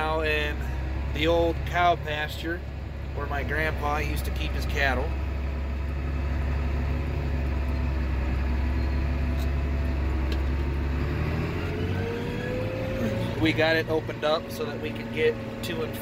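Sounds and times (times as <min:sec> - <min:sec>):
tractor engine running under load: 0:00.0 - 0:16.0
thin whine rising in pitch: 0:10.9 - 0:14.2.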